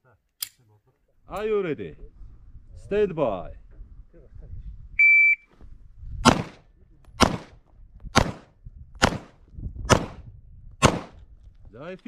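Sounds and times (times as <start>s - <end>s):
shot timer beep: 5.0s - 5.4s
pistol shots: 6.2s - 6.6s, 7.2s - 7.5s, 8.2s - 10.2s, 10.8s - 11.2s.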